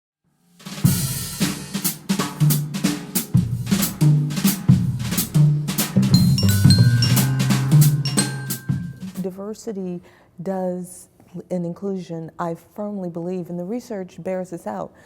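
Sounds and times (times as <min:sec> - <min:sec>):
drum-kit beat: 0:00.6 - 0:09.4
bass line: 0:05.9 - 0:09.2
high ringing notes: 0:06.1 - 0:09.2.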